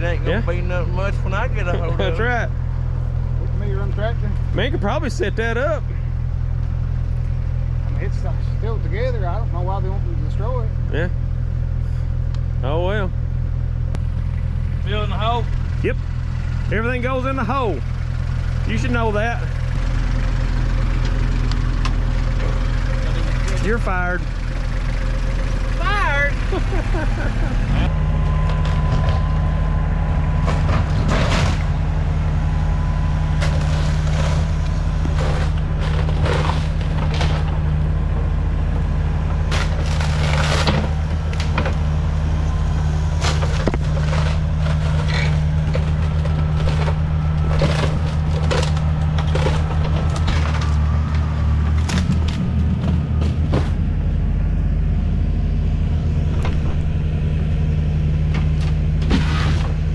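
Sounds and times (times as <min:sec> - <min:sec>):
diesel excavator engine running: 0:00.0 - 0:59.9
wood cracking and crunching: 0:33.3 - 0:41.9, 0:43.2 - 0:53.9.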